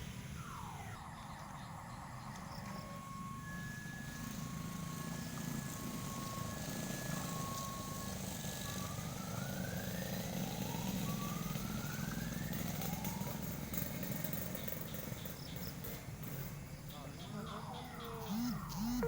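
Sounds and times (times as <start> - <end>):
vehicle engine revving: 18.2 - 19.0.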